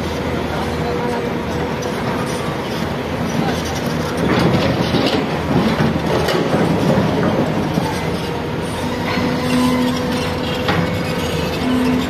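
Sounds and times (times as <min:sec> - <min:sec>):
excavator engine and machinery: 0:00.0 - 0:12.0
metallic clanks and squeals: 0:06.1 - 0:12.0.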